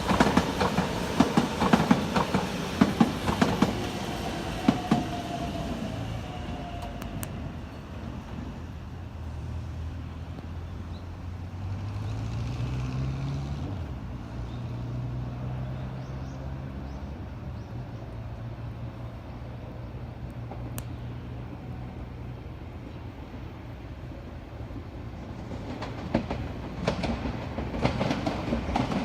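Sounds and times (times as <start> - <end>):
traffic din: 0.0 - 29.0.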